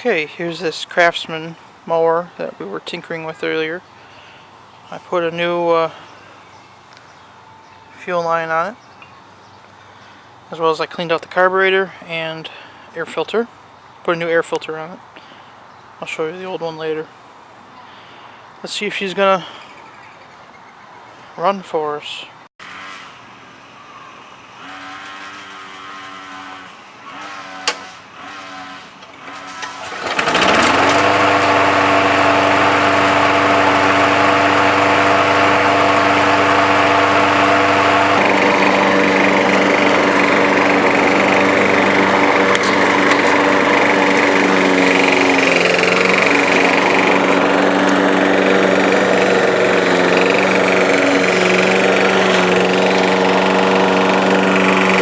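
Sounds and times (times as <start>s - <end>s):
push mower engine running: 27.2s - 55.0s.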